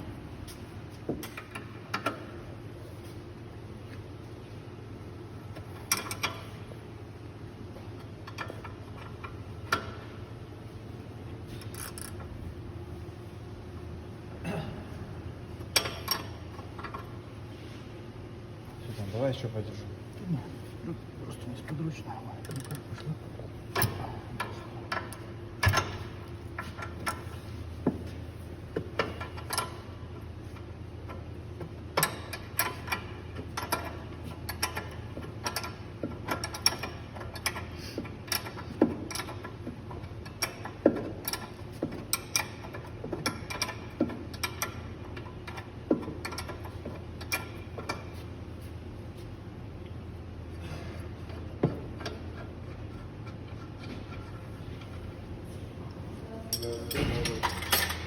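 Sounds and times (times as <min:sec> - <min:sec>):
steady low hum: 0:00.0 - 0:58.0.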